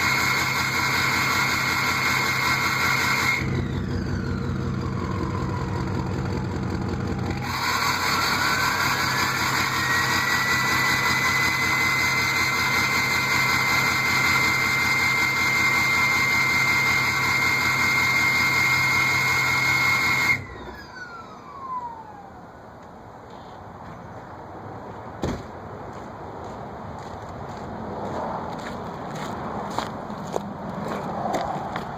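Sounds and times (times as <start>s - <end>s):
turbo whistle: 0.0s - 22.1s
turbodiesel engine running: 0.0s - 24.4s.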